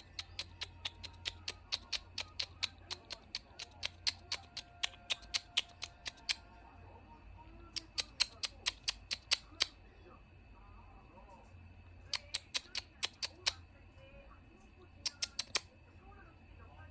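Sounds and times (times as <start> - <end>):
rapid sharp clicking: 0.0 - 6.4, 7.8 - 9.7, 12.1 - 13.6.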